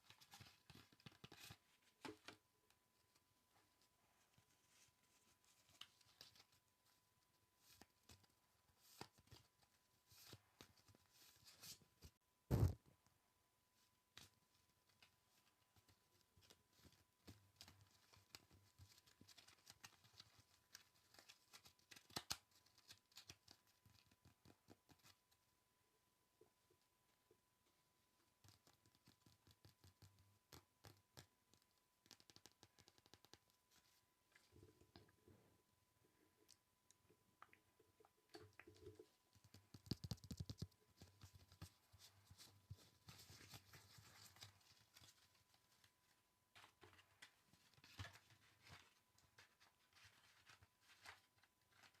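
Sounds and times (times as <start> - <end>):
light tapping and scratching: 28.2 - 35.2, 37.9 - 52.0.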